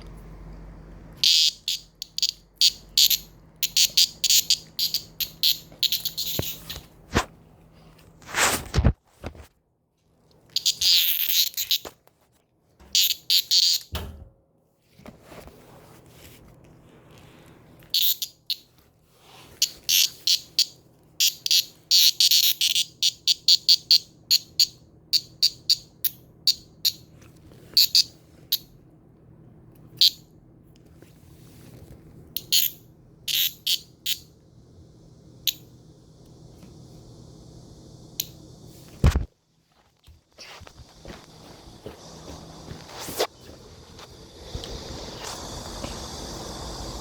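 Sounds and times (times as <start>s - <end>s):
cicada pulsing calls: 1.2s - 6.8s, 10.6s - 11.9s, 12.9s - 13.9s, 17.9s - 18.6s, 19.6s - 27.0s, 32.4s - 34.3s, 40.4s - 47.0s.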